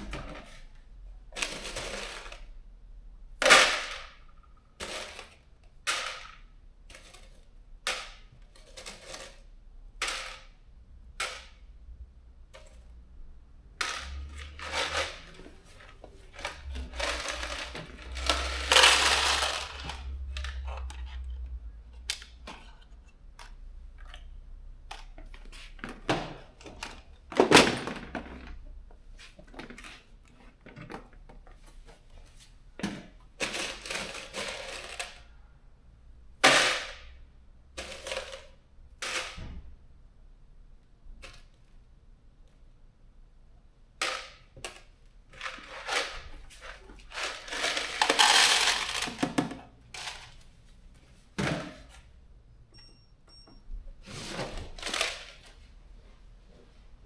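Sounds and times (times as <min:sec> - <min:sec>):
steel bolts and washers clinking: 0:12.4 - 0:25.4.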